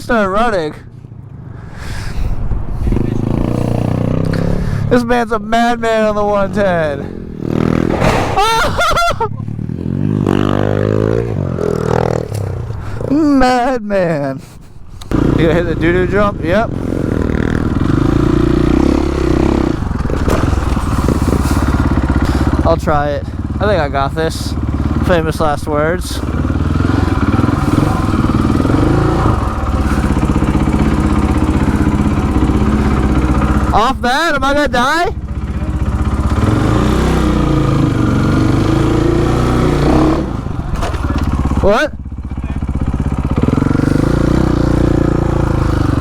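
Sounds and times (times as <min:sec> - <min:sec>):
small motorcycle engine revving: 0:16.7 - 0:25.3, 0:26.0 - 0:33.8, 0:35.2 - 0:46.0.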